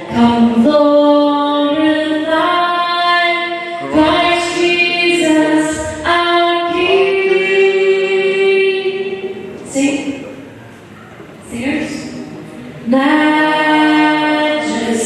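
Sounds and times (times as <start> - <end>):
woman singing unaccompanied: 0.0 - 10.2, 12.9 - 15.0.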